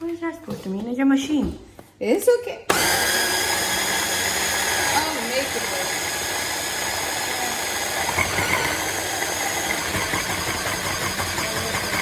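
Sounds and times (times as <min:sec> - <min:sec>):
electric blender grinding: 0:02.7 - 0:12.0.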